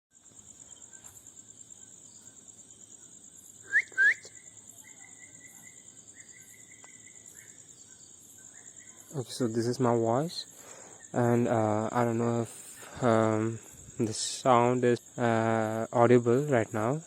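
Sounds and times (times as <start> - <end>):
high-pitched insect trill: 0.1 - 17.0
rising whistled notes: 3.6 - 4.4
bird calling: 3.6 - 9.2.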